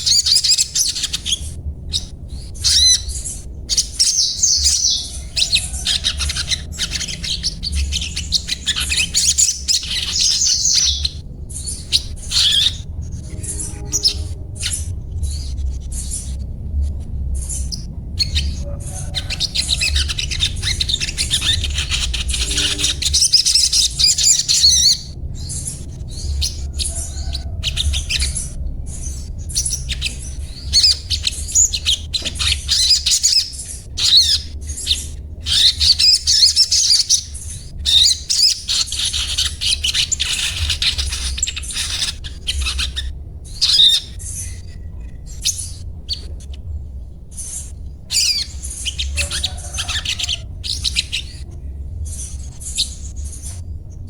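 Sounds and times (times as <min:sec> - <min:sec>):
songbird twittering: 0:00.0 - 0:54.0
steady low hum: 0:00.0 - 0:54.0.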